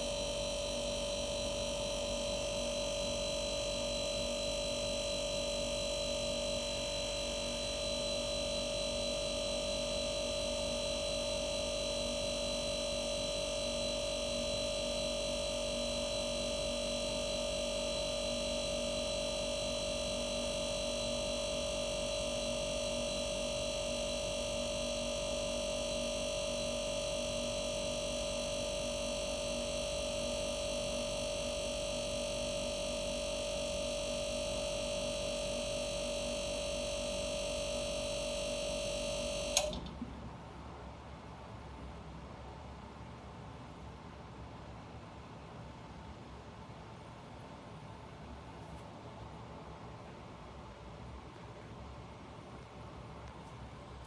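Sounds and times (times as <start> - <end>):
refrigerator compressor hum: 0.0 - 40.9.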